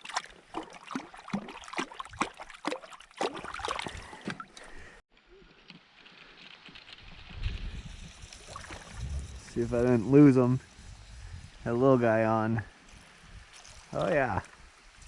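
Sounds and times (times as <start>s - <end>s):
fish splashing in water: 0.0s - 4.8s, 8.0s - 9.4s
faint wash of water: 0.0s - 5.0s, 6.8s - 12.1s.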